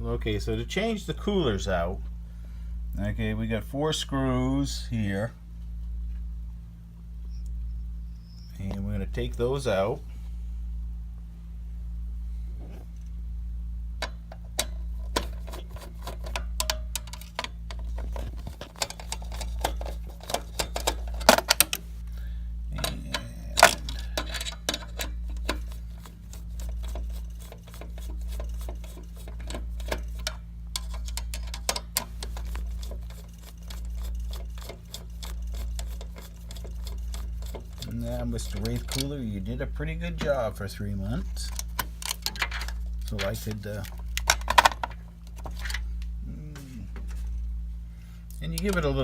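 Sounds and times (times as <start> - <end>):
steady low hum: 0.0 - 49.0.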